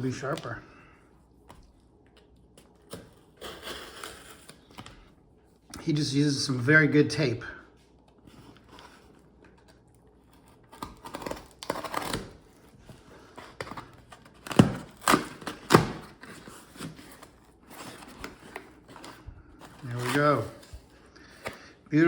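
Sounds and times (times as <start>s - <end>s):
packing tape being cut and torn: 2.8s - 4.8s, 10.3s - 12.6s, 13.4s - 20.6s.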